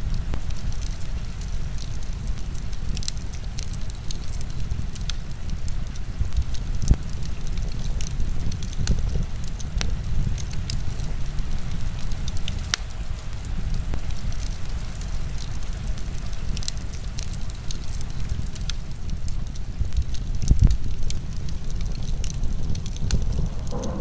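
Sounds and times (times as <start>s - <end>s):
wood fire crackling and popping: 0.0s - 24.0s
heavy rain hissing: 21.2s - 24.0s
low rumble: 22.2s - 24.0s.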